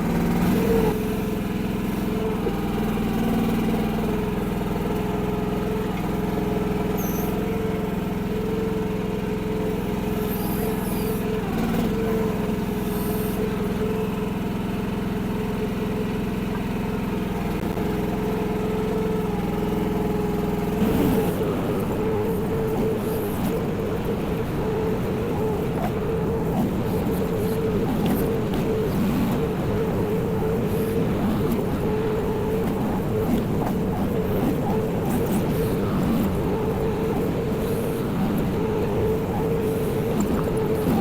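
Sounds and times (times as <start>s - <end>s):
excavator engine running: 0.0s - 41.0s.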